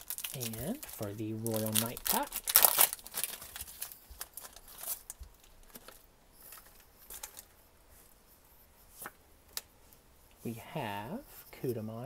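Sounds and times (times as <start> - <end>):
foil card pack rustling: 0.0 - 7.5.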